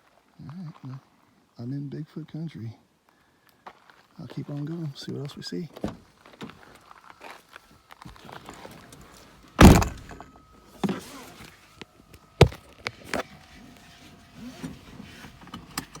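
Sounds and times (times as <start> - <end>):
car door shutting: 5.8 - 6.5, 9.6 - 11.4
small clunks and knocks: 9.6 - 11.0, 12.4 - 13.2.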